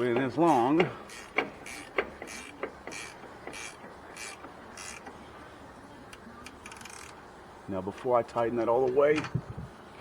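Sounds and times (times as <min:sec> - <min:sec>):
ratchet wrench rasping: 0:00.0 - 0:05.2.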